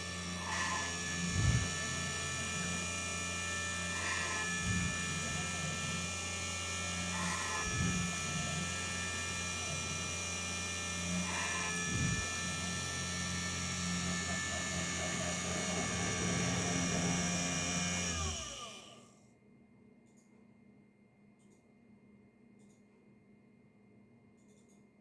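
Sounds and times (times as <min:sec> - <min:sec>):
spindle motor whining: 0:00.0 - 0:19.1.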